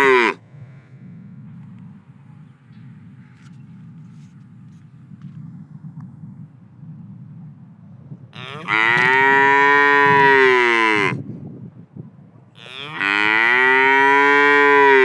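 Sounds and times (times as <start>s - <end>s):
cow mooing: 0.0s - 0.4s, 8.4s - 11.2s, 12.6s - 15.0s.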